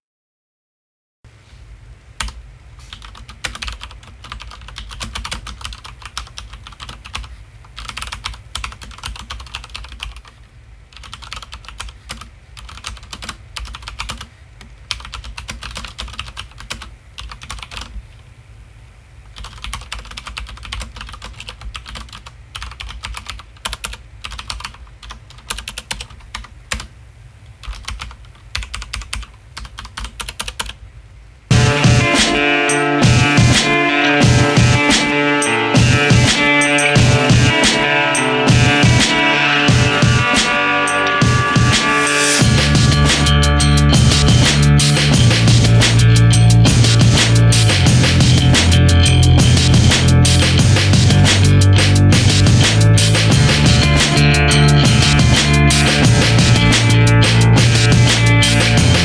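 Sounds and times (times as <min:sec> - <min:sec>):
mechanical keyboard typing: 0:02.2 - 0:14.3, 0:14.9 - 0:17.9, 0:19.4 - 0:26.9, 0:27.6 - 0:30.8
steady low hum: 0:31.5 - 0:35.1, 0:37.0 - 0:59.0.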